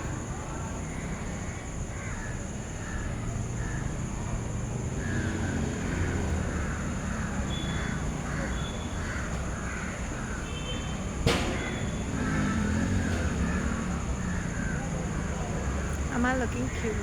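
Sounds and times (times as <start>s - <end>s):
crows cawing: 1.9s - 3.9s, 5.0s - 10.6s, 11.5s - 15.2s.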